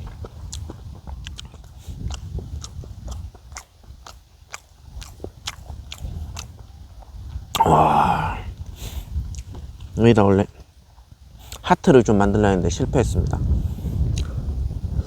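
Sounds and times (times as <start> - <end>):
wind rumbling on microphone: 0.0 - 15.0
person chewing food: 0.2 - 8.4
wet mouth clicks: 1.2 - 6.6.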